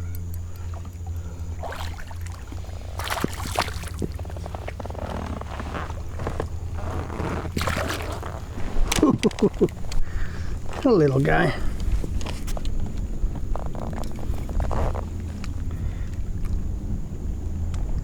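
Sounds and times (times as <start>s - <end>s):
steady low hum: 0.0s - 18.0s
water splashing and dripping: 0.3s - 4.8s, 7.5s - 12.7s
sharp clicks on a kayak: 2.4s - 10.9s, 11.7s - 16.6s.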